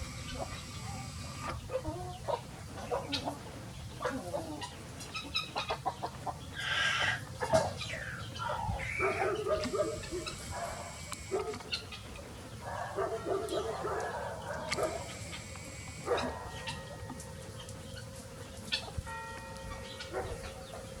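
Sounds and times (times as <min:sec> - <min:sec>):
harsh bark-like animal calls: 0:00.0 - 0:03.4, 0:06.6 - 0:17.4, 0:20.0 - 0:21.0.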